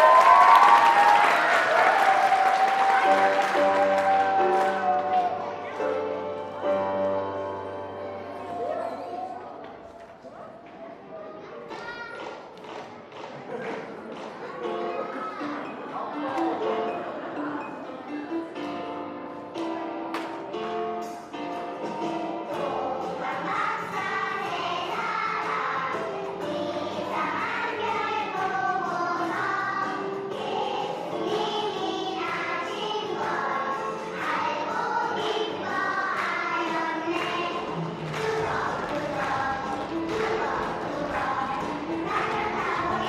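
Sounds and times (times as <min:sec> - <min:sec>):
musical accompaniment: 0:00.0 - 0:09.6, 0:14.5 - 0:43.0
children singing: 0:21.8 - 0:43.0.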